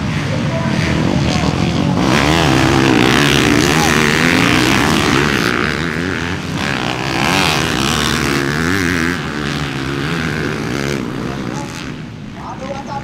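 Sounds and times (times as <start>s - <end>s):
dirt bike engines revving: 0.0s - 13.0s.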